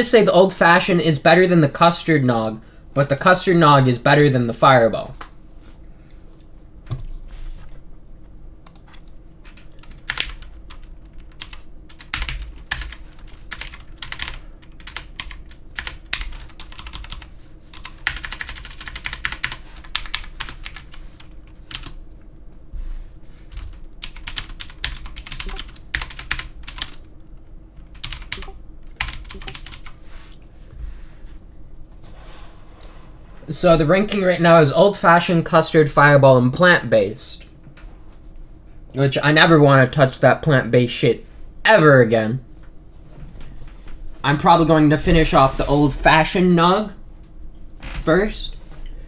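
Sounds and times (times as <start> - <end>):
faint steady hum: 0.0 - 49.0
computer keyboard typing: 9.7 - 21.0, 21.6 - 22.0, 23.5 - 27.0, 27.9 - 30.0.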